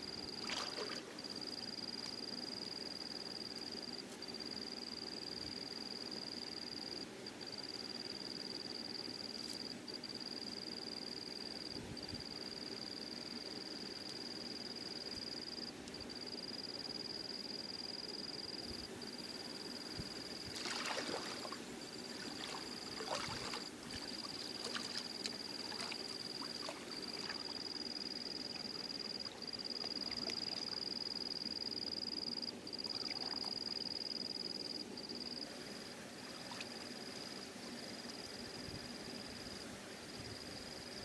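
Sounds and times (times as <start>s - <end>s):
water splashing and sloshing: 0.3s - 1.3s, 20.0s - 27.8s, 28.4s - 30.8s, 36.3s - 37.3s.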